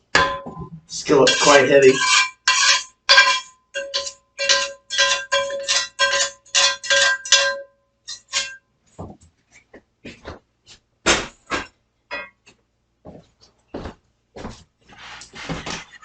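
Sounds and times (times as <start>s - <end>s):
utensil scraping metal skillet: 0.2s - 8.6s.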